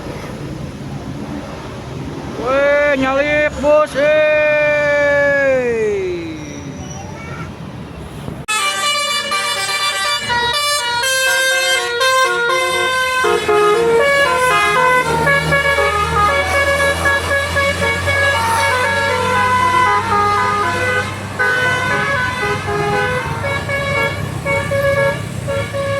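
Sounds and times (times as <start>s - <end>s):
bus air horn melody: 8.5s - 25.9s.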